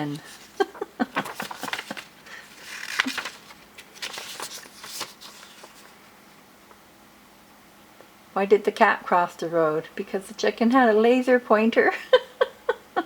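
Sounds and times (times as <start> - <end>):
paper rustling and clicking: 0.0 - 6.0.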